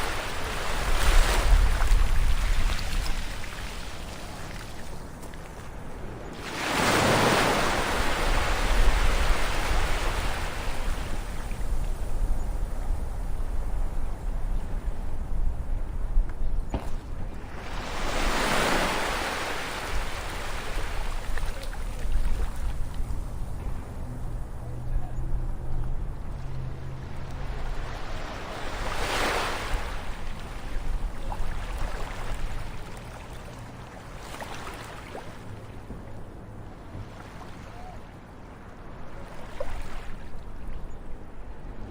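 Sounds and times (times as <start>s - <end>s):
wave breaking on shore: 0.0s - 4.9s, 6.4s - 12.0s, 17.0s - 22.9s, 26.9s - 32.9s
low rumble of sea: 0.0s - 41.9s.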